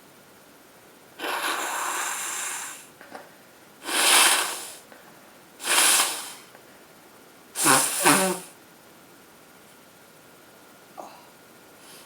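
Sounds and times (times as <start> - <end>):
nose blowing into handkerchief: 1.2 - 2.9, 3.8 - 4.8, 5.6 - 6.5, 7.6 - 8.6.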